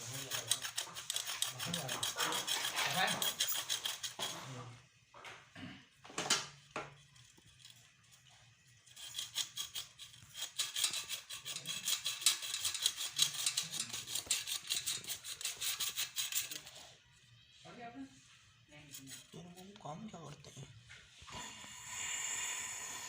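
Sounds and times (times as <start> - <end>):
rasping file strokes: 0.0 - 4.5, 8.8 - 16.8.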